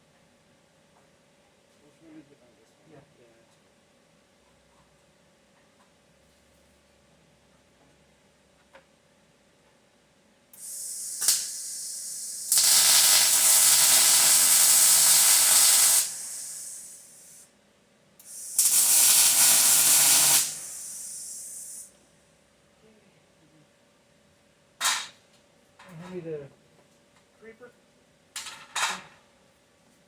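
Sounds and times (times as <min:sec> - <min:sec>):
welding arc sizzling: 0:10.6 - 0:17.4, 0:18.2 - 0:21.9
shielding gas hissing: 0:10.6 - 0:17.5, 0:18.2 - 0:22.0.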